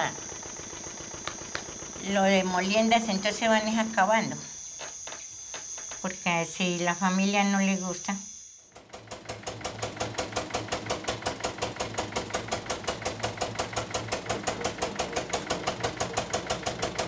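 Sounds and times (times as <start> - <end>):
gasoline engine driving mill gears: 0.0 - 4.1, 8.8 - 17.0.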